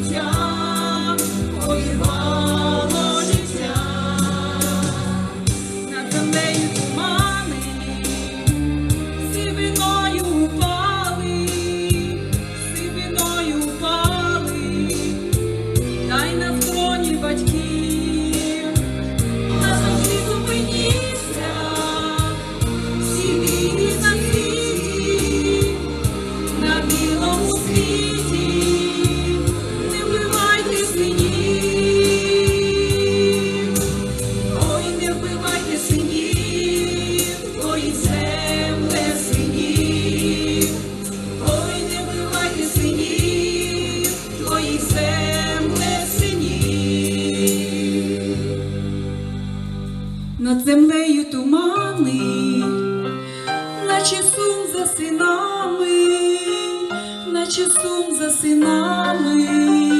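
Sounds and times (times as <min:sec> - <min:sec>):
choir-like vocals: 0:00.0 - 0:08.5, 0:16.9 - 0:49.4
slow mournful song with beat: 0:00.0 - 0:50.5.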